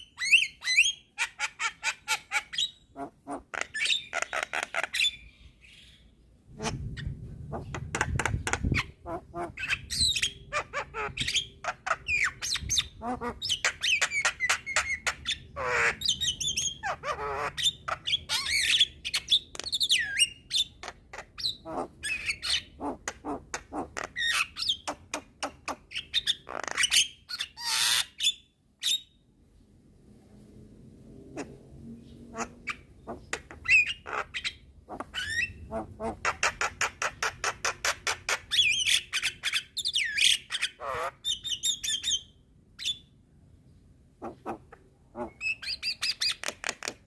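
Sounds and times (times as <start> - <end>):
myna bird singing: 0.0 - 29.2, 31.4 - 47.0.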